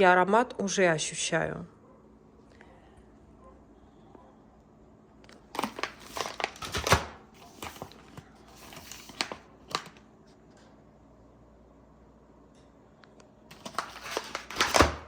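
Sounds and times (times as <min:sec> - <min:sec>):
plastic packaging crinkling: 0:05.3 - 0:10.0, 0:13.5 - 0:15.0.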